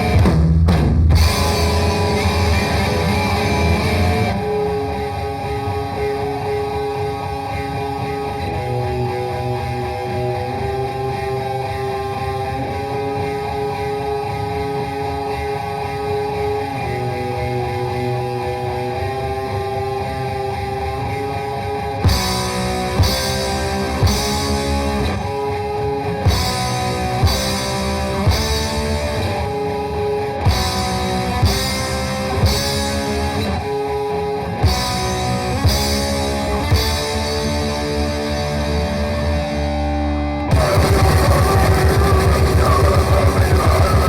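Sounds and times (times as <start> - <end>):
distorted electric guitar chords: 0.0 - 44.0
heavy drum hits: 40.5 - 44.0.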